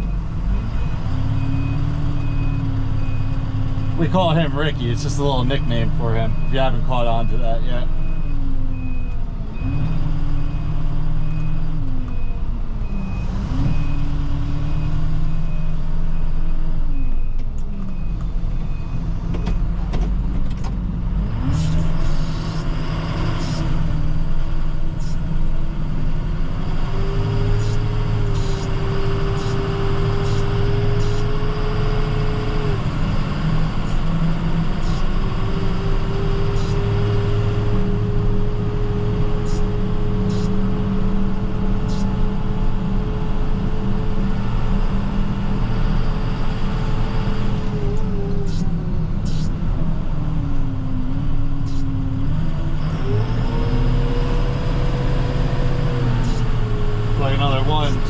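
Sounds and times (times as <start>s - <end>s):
whine over engine: 0.0s - 0.9s, 26.8s - 58.0s
truck engine running: 0.0s - 58.0s.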